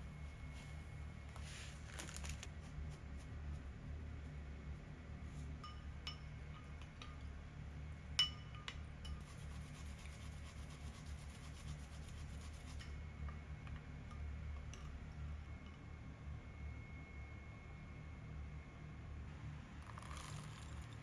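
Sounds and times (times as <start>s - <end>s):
low steady hum: 0.0s - 21.0s
quiet rubbing and scraping: 0.3s - 5.6s
utensil clinking against dish: 5.6s - 7.3s, 8.2s - 9.4s.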